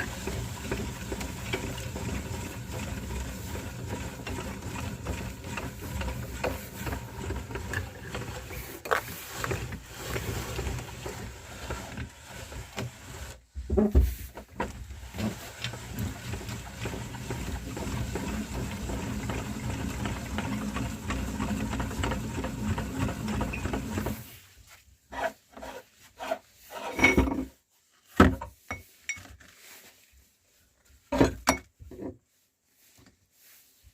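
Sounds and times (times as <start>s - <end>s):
meat grinder grinding: 0.0s - 13.4s, 15.0s - 24.3s.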